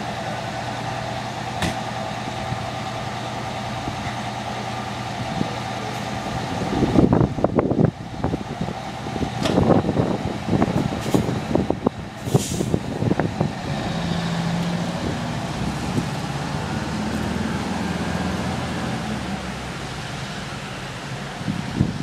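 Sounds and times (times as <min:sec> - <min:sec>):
diesel engine idling: 0:00.0 - 0:22.0
hiss of air: 0:12.2 - 0:12.8.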